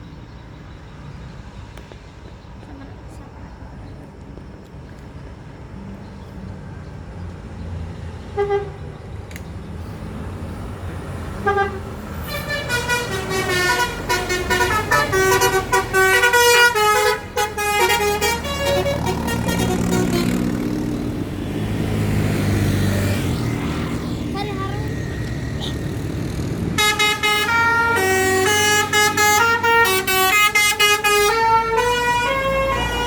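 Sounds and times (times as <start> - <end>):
bus engine running: 0.0 - 33.0
bus horn melody: 8.3 - 8.9, 11.3 - 21.2, 24.5 - 33.0
bus horn toots: 8.3 - 8.9, 11.3 - 21.2, 24.3 - 33.0.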